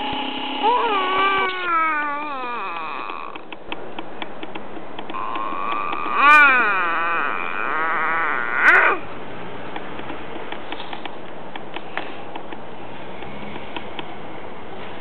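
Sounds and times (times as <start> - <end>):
pet warbling call: 0.6 - 3.4, 5.1 - 9.0
faint clicks: 3.0 - 6.2.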